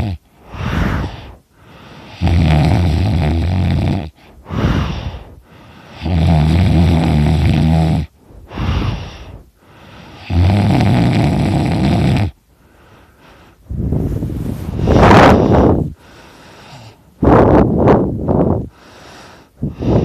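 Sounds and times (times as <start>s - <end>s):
person snoring loudly: 0.0s - 1.3s, 2.1s - 5.2s, 5.9s - 9.3s, 10.2s - 12.4s
breathy breath: 0.3s - 2.2s, 4.1s - 6.1s, 8.2s - 10.3s, 12.6s - 17.2s, 18.6s - 20.0s.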